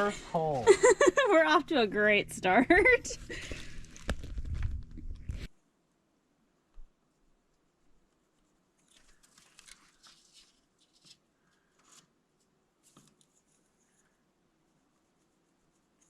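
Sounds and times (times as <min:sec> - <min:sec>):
faint rustling and scraping: 0:03.1 - 0:05.6, 0:06.7 - 0:16.0.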